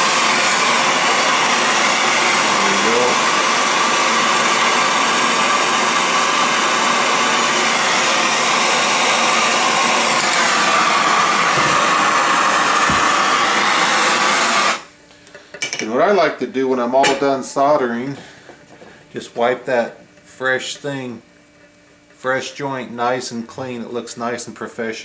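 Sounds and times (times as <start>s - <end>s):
gas torch hissing: 0.0s - 14.9s.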